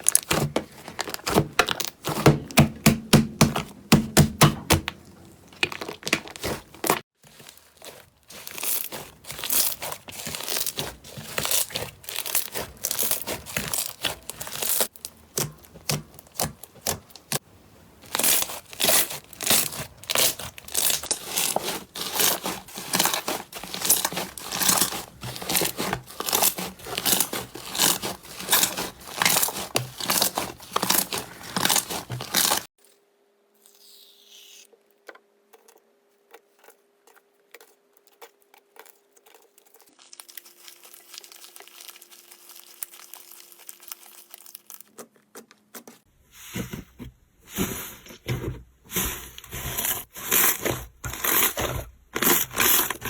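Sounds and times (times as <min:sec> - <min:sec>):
slime crackling and popping: 0:05.5 - 0:17.4, 0:18.0 - 0:32.7, 0:39.8 - 0:45.0.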